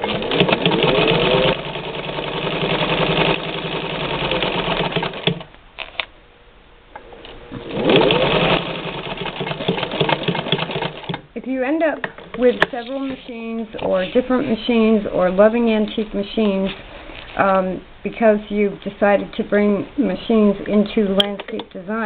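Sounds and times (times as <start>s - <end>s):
electric sewing machine stitching: 0.0s - 5.5s, 7.5s - 11.2s.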